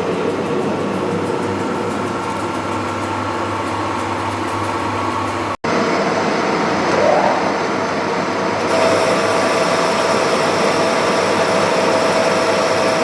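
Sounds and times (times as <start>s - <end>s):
rising whine: 5.8s - 10.2s.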